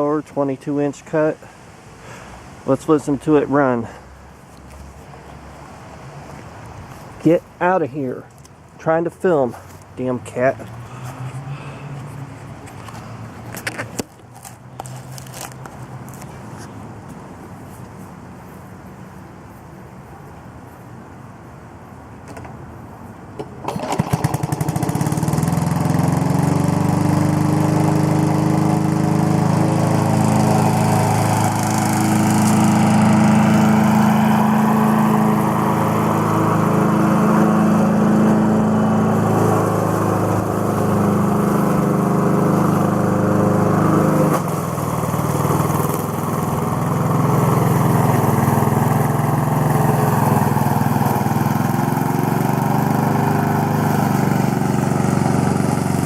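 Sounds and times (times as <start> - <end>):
lawnmower engine pull-started: 23.4 - 56.0.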